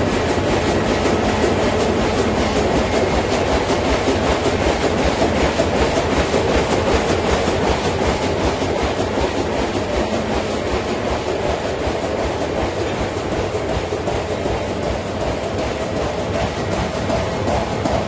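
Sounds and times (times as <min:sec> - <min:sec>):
printing machine mechanical clatter: 0:00.0 - 0:18.0.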